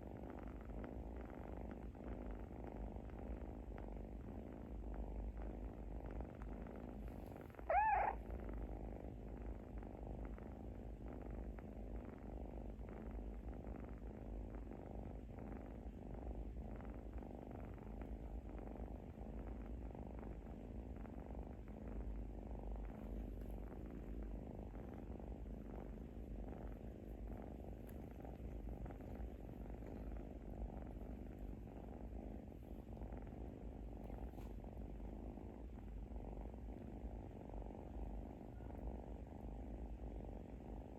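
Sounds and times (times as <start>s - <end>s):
kitten purring snore: 0.0s - 40.9s
kitten squeaky call: 7.7s - 8.2s.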